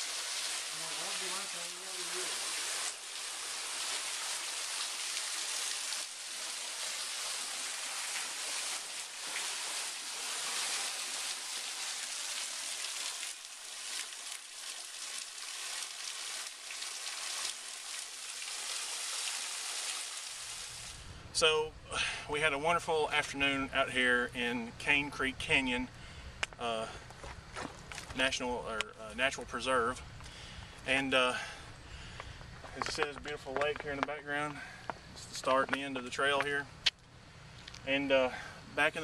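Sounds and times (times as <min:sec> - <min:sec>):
waterfall splashing: 0:00.0 - 0:21.0.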